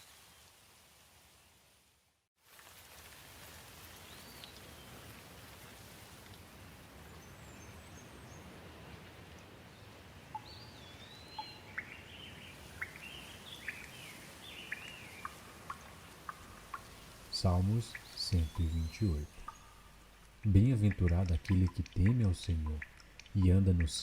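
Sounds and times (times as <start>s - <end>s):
soft steady rain: 0.0s - 24.0s
birds chirping: 9.7s - 24.0s.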